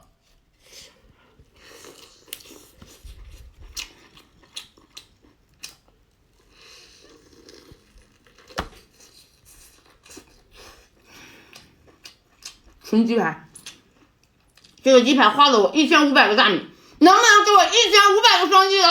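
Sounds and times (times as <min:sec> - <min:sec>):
crunchy chewing of fried chicken: 0:00.5 - 0:12.9, 0:13.5 - 0:14.8.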